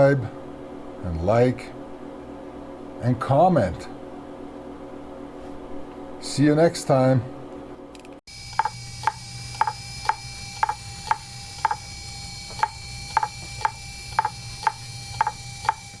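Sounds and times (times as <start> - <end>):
faint steady whine: 0.0 - 16.0
steady low hum: 0.0 - 16.0
regular ticking clicks: 8.5 - 11.8, 12.6 - 15.8.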